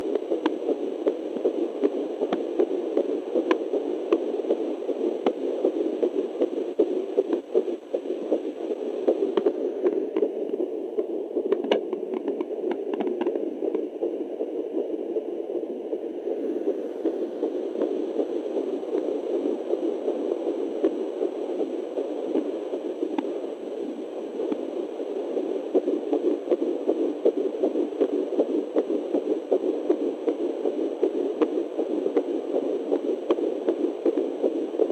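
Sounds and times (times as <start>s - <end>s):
doppler probe clicks: 11.5s - 13.8s.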